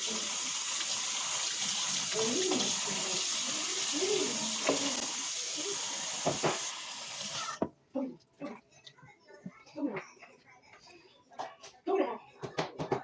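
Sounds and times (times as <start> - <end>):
tap running into a sink: 4.2 - 5.2, 5.9 - 7.7.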